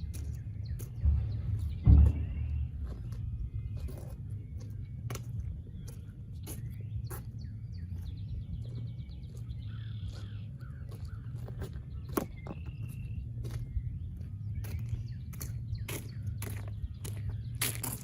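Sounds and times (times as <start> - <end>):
birds calling: 0.0 - 18.0
steady low rumble: 0.0 - 18.0
sharp knocks and clicks: 0.8 - 3.2.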